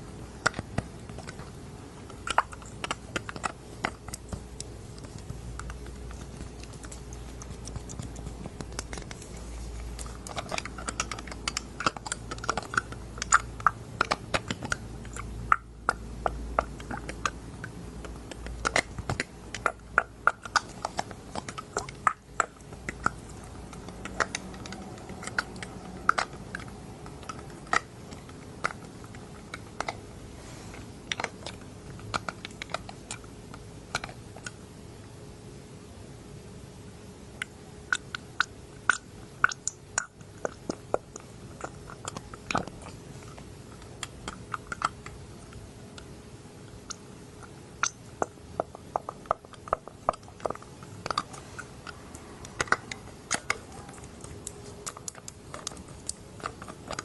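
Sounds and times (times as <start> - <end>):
eyedropper clicks and taps: 2.1 - 30.0.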